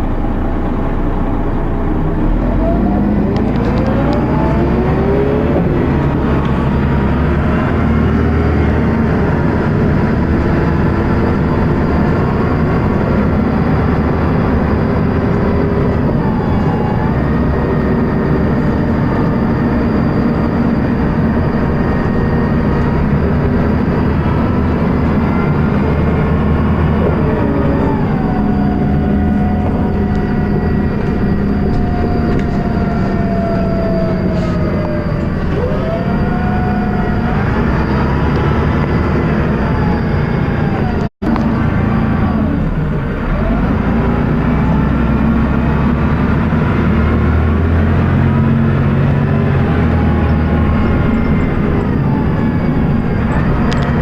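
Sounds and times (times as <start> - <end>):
bus diesel engine running hard: 0.0 - 54.0
high-pitched whine: 0.0 - 54.0.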